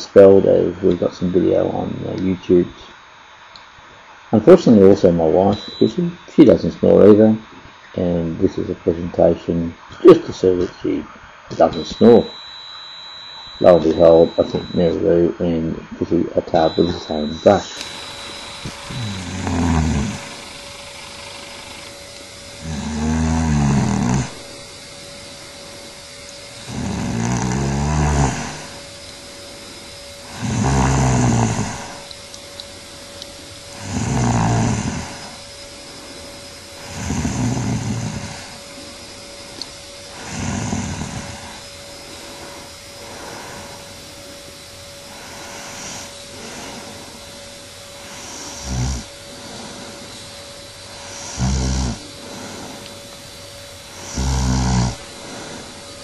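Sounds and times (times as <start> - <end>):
woman snoring: 18.4 - 21.9, 22.6 - 24.6, 26.6 - 28.8, 30.2 - 32.0, 33.7 - 35.4, 36.8 - 38.6, 40.1 - 41.6, 48.0 - 50.2, 50.9 - 52.9, 53.9 - 55.8.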